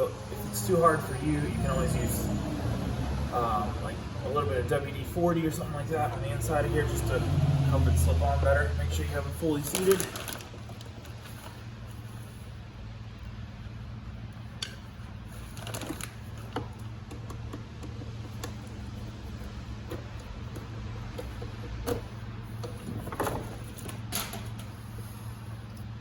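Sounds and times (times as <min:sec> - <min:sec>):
hands knocking and rubbing parts: 0:15.8 - 0:24.1.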